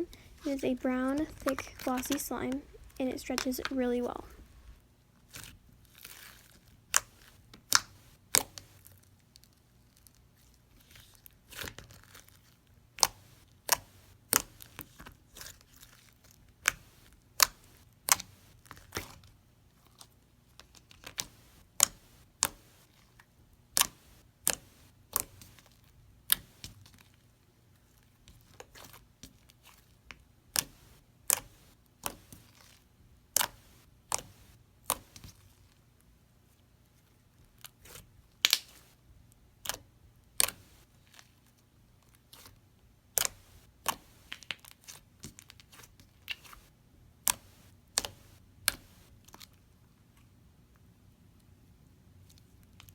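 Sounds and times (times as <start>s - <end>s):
slime squishing with clicking pops: 5.3s - 27.4s, 28.1s - 35.5s, 37.4s - 49.6s.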